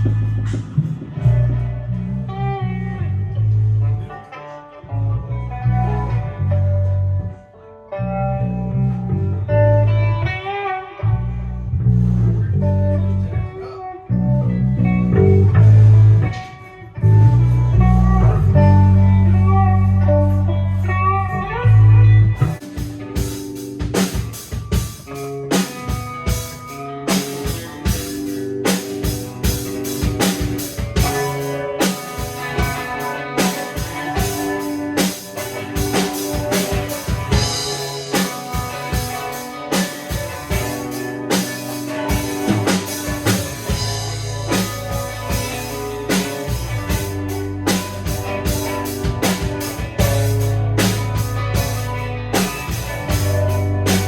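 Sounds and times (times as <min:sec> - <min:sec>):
drum kit beat: 0:00.0 - 0:01.8, 0:22.4 - 0:54.0
electric guitars: 0:00.0 - 0:54.0
rock music: 0:00.0 - 0:54.0.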